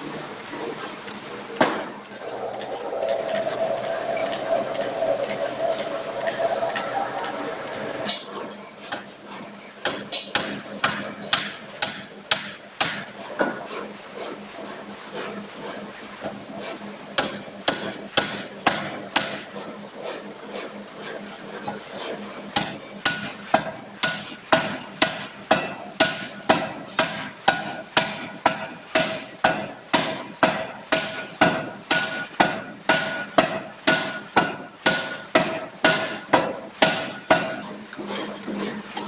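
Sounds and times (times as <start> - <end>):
machine humming: 0.0 - 25.4
forging hammer blows: 1.6 - 39.0.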